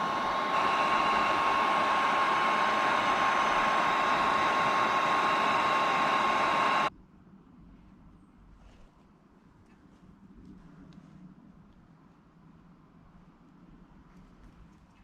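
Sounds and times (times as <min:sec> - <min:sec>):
heat gun blowing hot air: 0:00.0 - 0:06.9.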